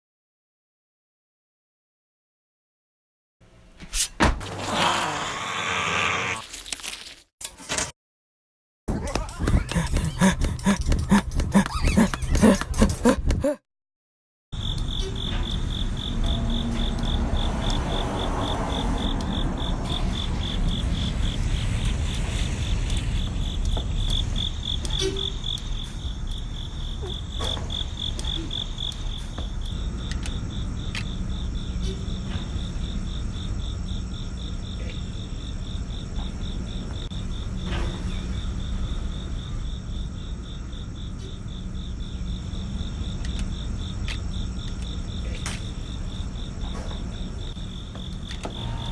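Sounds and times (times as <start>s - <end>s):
crickets chirping: 14.6s - 48.9s.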